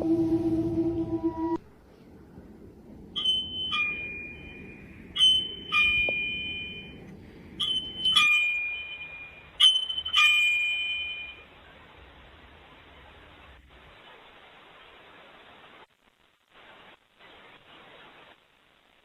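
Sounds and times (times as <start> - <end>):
electronic doorbell chime: 3.2 - 7.0, 7.6 - 11.4.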